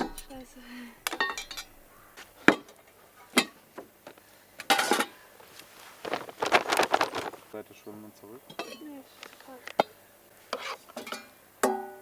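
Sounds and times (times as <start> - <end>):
cutlery clinking on dishes: 4.7 - 5.2, 8.5 - 8.9, 10.6 - 12.0
cutlery scraping: 8.5 - 8.9, 10.5 - 11.4.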